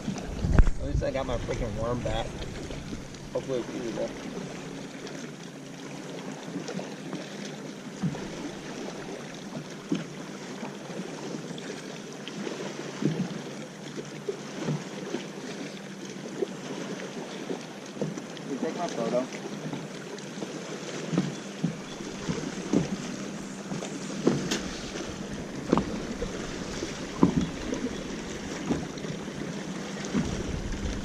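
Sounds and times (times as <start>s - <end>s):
knocks in boat: 0.0s - 3.5s, 21.0s - 29.2s
water lapping against hull: 0.0s - 31.0s.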